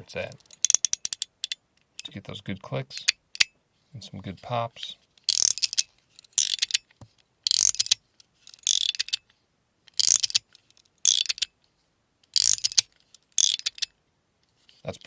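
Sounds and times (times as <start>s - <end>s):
fidget slider clicking: 0.4s - 1.6s, 5.2s - 6.9s, 7.5s - 9.3s, 9.9s - 11.5s, 12.3s - 13.9s.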